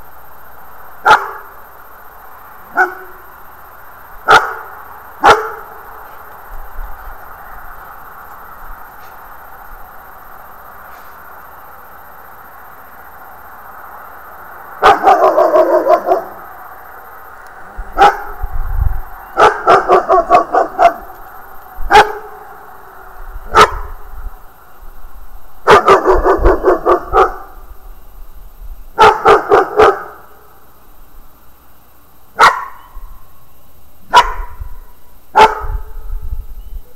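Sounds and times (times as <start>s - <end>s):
dog barking: 1.0s - 1.5s, 2.7s - 3.2s, 4.3s - 5.8s, 14.8s - 16.4s, 18.0s - 18.4s, 19.4s - 21.1s, 21.9s - 22.4s, 23.5s - 23.9s, 25.6s - 27.6s, 29.0s - 30.3s, 32.4s - 32.9s, 34.1s - 34.6s, 35.4s - 36.0s.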